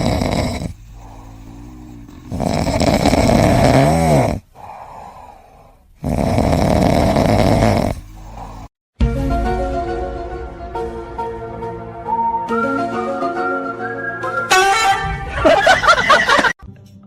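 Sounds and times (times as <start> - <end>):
pet snoring loudly: 0.0 - 8.7.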